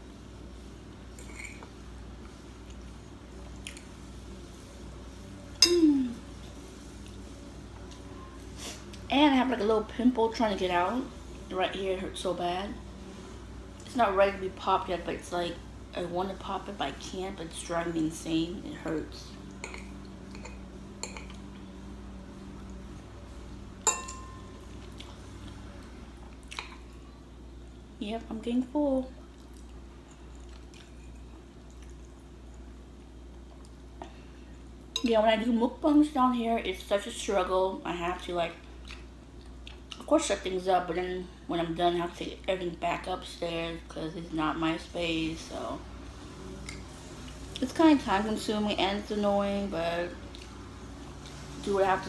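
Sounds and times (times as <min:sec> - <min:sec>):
low steady hum: 0:00.0 - 0:52.0
metal utensil clinking on dish: 0:23.9 - 0:24.5
wet chewing of food: 0:24.6 - 0:27.0, 0:29.2 - 0:34.2, 0:38.6 - 0:40.1, 0:50.2 - 0:51.5.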